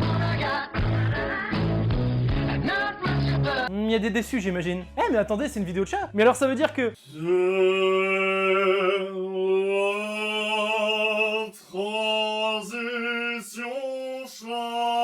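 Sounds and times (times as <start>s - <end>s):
person singing long notes: 7.0s - 15.0s.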